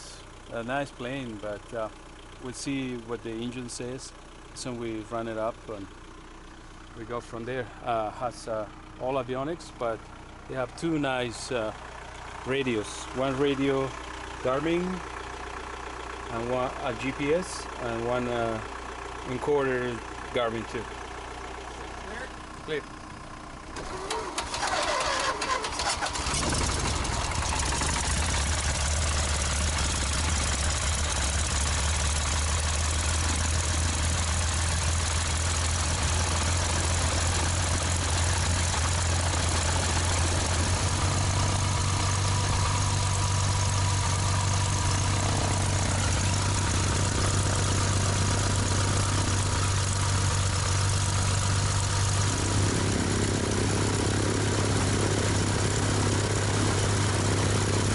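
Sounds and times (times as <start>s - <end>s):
engine starter cranking: 23.7s - 31.9s
aircraft engine starting and running: 23.7s - 57.9s.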